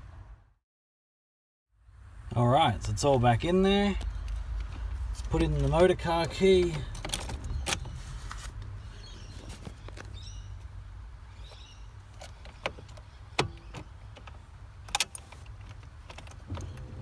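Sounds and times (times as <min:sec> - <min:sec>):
car key turning in ignition: 0:03.1 - 0:10.3, 0:11.4 - 0:17.0.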